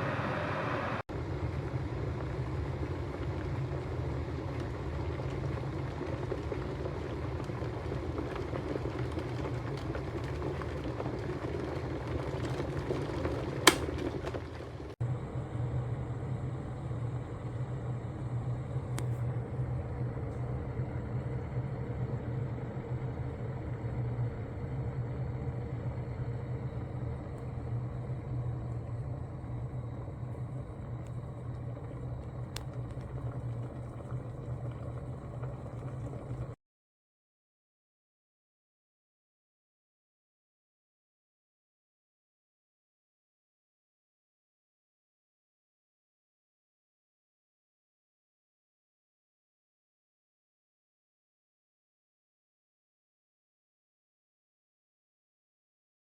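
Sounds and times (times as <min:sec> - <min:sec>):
electric kettle heating water: 0:00.0 - 0:36.6
kettle switch click: 0:13.6 - 0:14.0.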